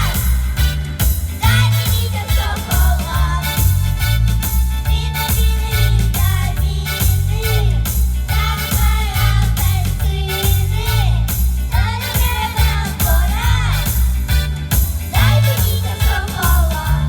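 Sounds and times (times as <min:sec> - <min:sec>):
children singing: 0:00.0 - 0:00.7, 0:01.4 - 0:03.7, 0:05.0 - 0:14.0, 0:15.1 - 0:17.0
music with a steady beat: 0:00.0 - 0:17.0.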